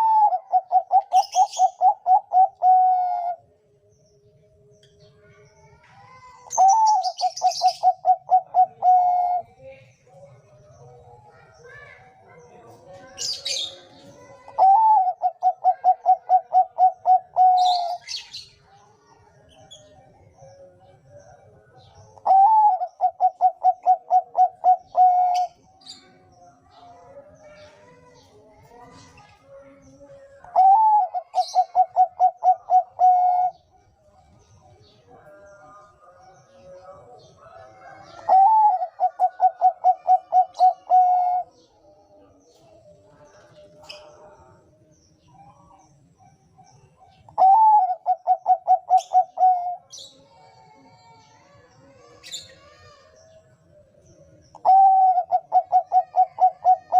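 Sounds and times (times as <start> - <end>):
dove cooing song: 0.0 - 11.5, 12.5 - 18.7, 19.5 - 56.9
faint cooing of doves: 0.0 - 56.9
small birds chirping: 0.0 - 56.9.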